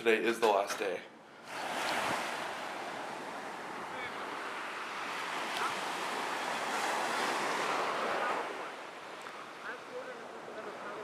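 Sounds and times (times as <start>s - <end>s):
waves washing onto beach: 1.3s - 11.0s.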